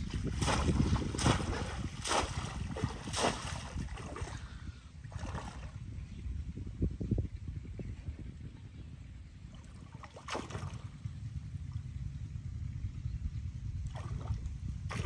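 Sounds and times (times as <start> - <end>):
splashes in shallow water: 0.0 - 5.8, 9.5 - 11.0, 13.8 - 15.0
wind rumble on microphone: 0.0 - 15.0.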